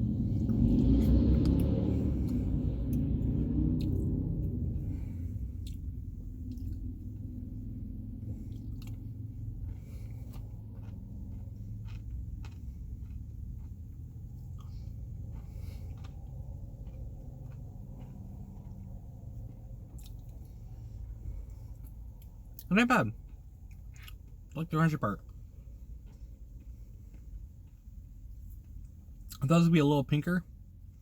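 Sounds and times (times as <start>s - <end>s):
person chewing: 0.0s - 24.6s, 25.2s - 29.4s
steady low hum: 0.0s - 31.0s.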